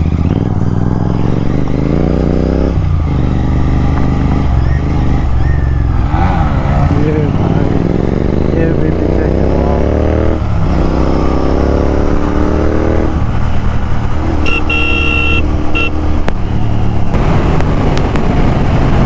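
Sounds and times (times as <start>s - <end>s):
motorcycle engine accelerating: 0.0s - 19.0s
vehicle horn honking: 14.4s - 16.0s
wind noise on microphone: 16.2s - 19.0s.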